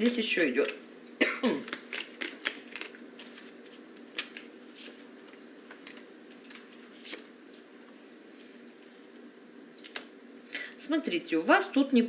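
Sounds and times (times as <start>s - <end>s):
faint steady hum: 0.0s - 12.0s
cards clicking and rustling: 1.6s - 7.2s.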